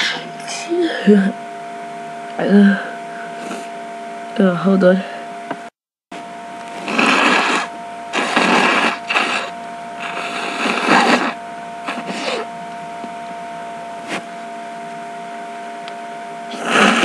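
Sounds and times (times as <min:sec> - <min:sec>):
person sneezing: 0:06.8 - 0:12.5.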